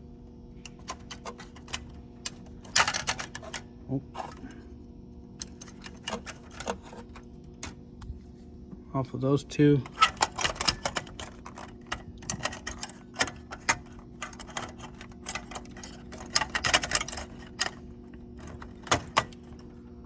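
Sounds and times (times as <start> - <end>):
steady low hum: 0.0 - 20.0
plastic connectors clicking and rattling: 9.9 - 19.6.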